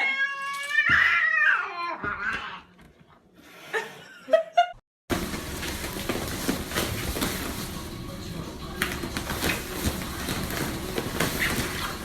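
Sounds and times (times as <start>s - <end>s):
cat meowing: 0.0s - 2.7s
faint voices: 5.5s - 12.0s.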